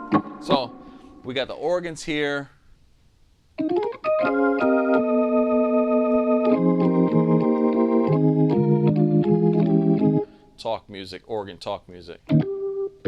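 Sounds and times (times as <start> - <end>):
synth organ chords: 0.0 - 1.3, 3.6 - 10.4, 12.3 - 13.0.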